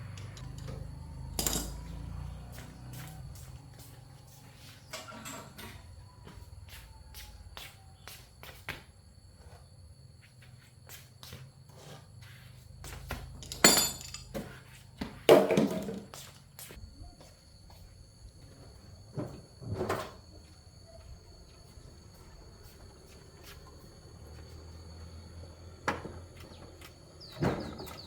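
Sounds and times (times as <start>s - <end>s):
objects knocking and clattering: 0.1s - 1.9s, 13.3s - 14.5s, 15.3s - 16.1s.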